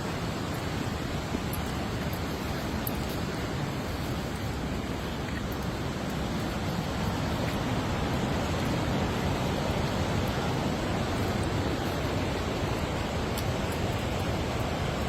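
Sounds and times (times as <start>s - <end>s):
stream rushing over rocks: 0.0s - 15.0s.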